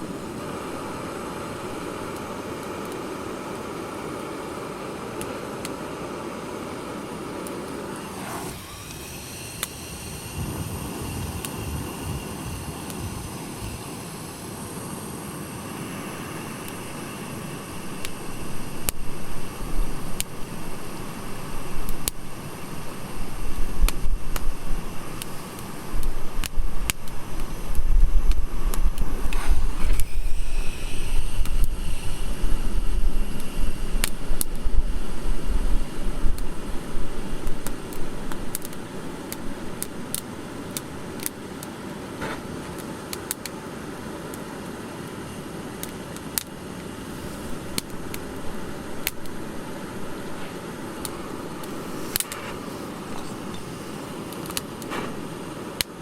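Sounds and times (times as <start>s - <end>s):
campfire crackling and popping: 0.0s - 15.1s, 15.7s - 56.0s
brief hiss: 7.9s - 14.2s, 50.3s - 55.5s.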